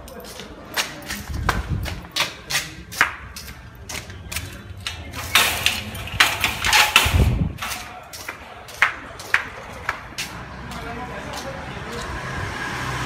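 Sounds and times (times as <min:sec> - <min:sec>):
sharp clicks and knocks: 0:04.4 - 0:09.4.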